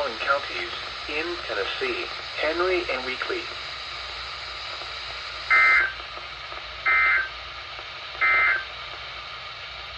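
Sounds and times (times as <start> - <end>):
steady hiss: 0.0 - 9.9
screeching digital data tones: 8.2 - 8.7.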